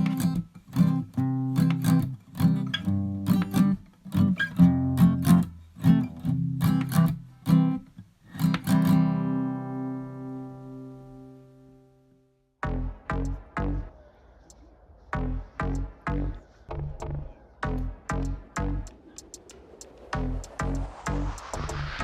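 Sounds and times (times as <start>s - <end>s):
acoustic guitar strumming: 0.0s - 12.2s.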